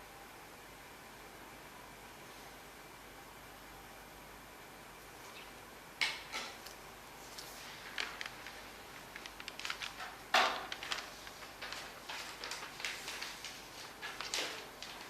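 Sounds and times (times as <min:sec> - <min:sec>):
paper crackle: 0:06.6 - 0:15.0.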